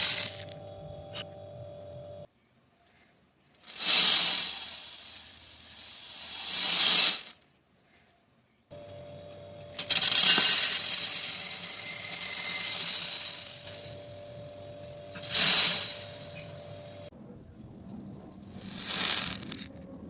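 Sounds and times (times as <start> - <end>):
beads pouring and rattling: 0.0 - 0.6, 3.7 - 7.3, 9.8 - 13.9, 18.5 - 19.8
faint steady hum: 0.0 - 2.3, 8.7 - 10.0, 13.6 - 18.7.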